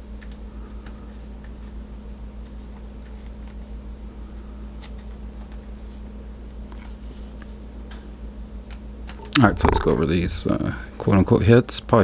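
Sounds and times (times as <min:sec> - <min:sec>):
steady low hum: 0:09.2 - 0:11.6.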